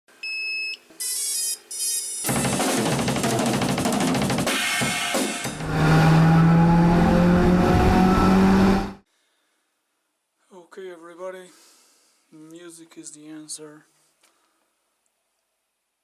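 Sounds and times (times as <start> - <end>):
drum kit playing: 2.3 - 6.1.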